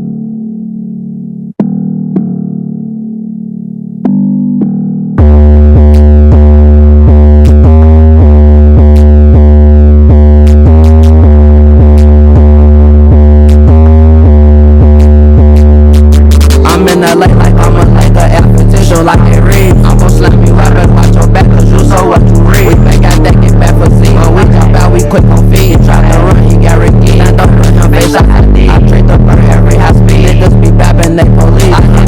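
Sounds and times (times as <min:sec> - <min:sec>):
synth and keyboard chords: 0:01.6 - 0:32.0
heavily boosted bass: 0:04.0 - 0:32.0
steady drum beat: 0:16.2 - 0:32.0.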